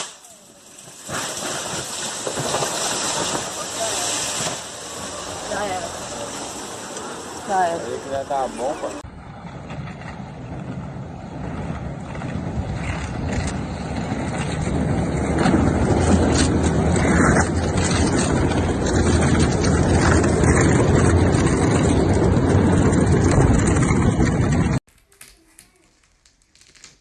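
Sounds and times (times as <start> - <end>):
loud rushing noise: 2.5 - 24.8
low engine hum: 3.4 - 24.8.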